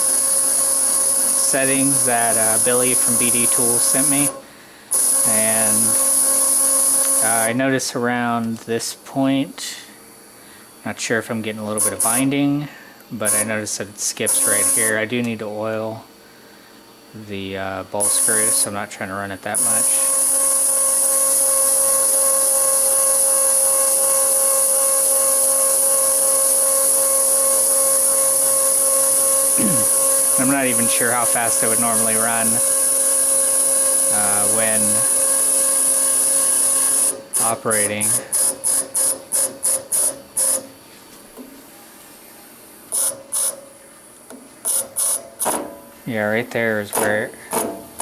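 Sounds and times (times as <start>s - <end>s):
stepper motor whine: 0.0s - 7.7s, 14.3s - 15.1s, 18.0s - 18.7s, 19.5s - 40.7s, 42.9s - 43.6s.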